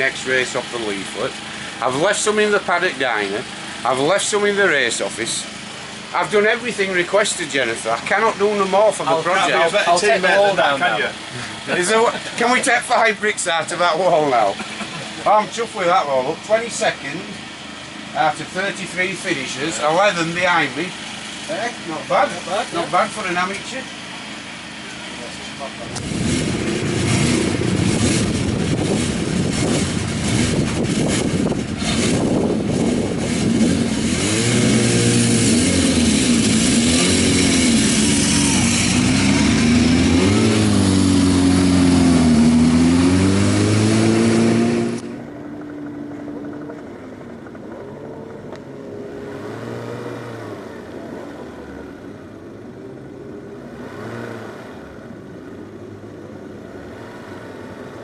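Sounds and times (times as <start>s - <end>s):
quieter engine running: 0.0s - 58.0s
racing motorcycle engine revving: 25.2s - 58.0s
rushing wind noise: 26.0s - 45.2s.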